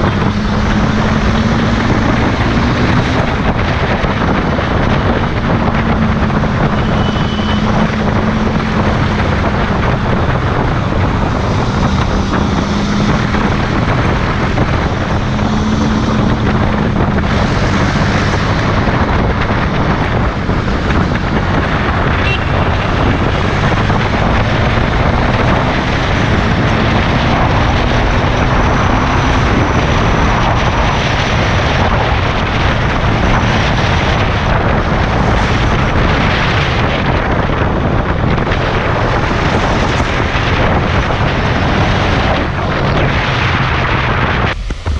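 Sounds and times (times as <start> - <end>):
motorcycle engine hum: 0.0 - 44.9
wind rushing on microphone: 0.0 - 44.9.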